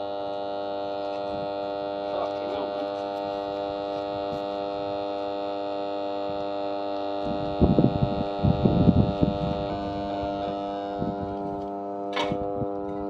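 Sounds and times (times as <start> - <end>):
electric motor buzzing hum: 0.0 - 13.0
motor crackling: 0.0 - 13.0.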